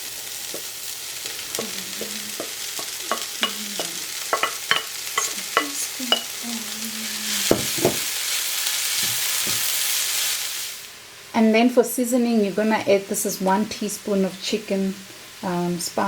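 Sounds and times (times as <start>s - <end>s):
vegetables sizzling in a pot: 0.0s - 16.0s
spoon scraping and tapping a pot: 2.0s - 6.3s
louder knocks: 7.5s - 8.1s.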